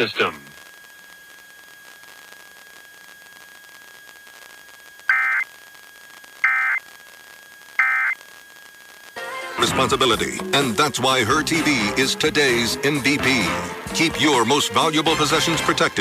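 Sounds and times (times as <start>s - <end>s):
data tone bursts over radio: 0.0s - 16.0s
static hiss: 0.0s - 16.0s
faint steady tone: 0.3s - 9.2s.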